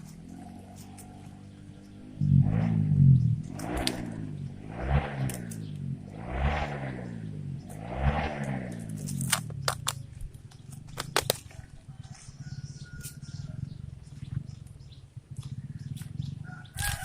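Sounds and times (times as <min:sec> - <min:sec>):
engine revving and idling: 0:00.0 - 0:17.0
sharp clicks and knocks: 0:08.4 - 0:11.6.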